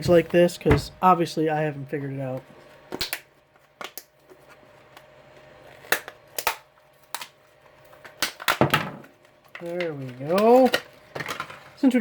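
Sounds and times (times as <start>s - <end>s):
hard plastic packaging cracking: 2.9s - 5.1s, 5.7s - 11.8s.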